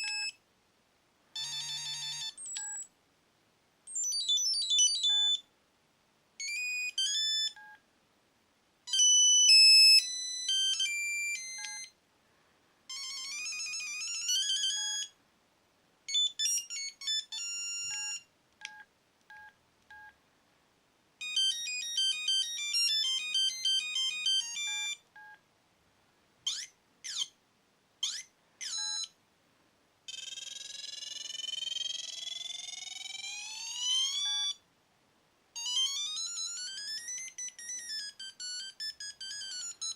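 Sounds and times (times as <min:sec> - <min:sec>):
beepy electronic ringtone melody: 0:00.0 - 0:00.4, 0:01.4 - 0:02.9, 0:04.0 - 0:05.4, 0:06.4 - 0:07.7, 0:08.9 - 0:11.9, 0:12.9 - 0:15.1, 0:16.1 - 0:18.2, 0:21.2 - 0:25.0, 0:28.0 - 0:29.1, 0:30.1 - 0:34.6, 0:35.6 - 0:39.9.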